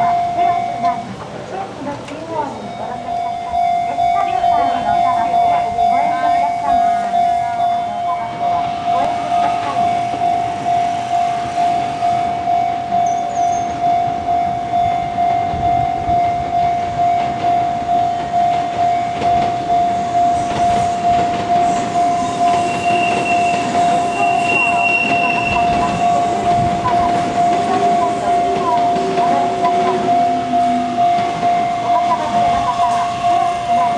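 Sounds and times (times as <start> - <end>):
level-crossing warning bell: 0.0 - 33.9
train wheels rumbling on rails: 0.0 - 33.9
thin high whine from train: 6.2 - 16.7, 18.4 - 33.9.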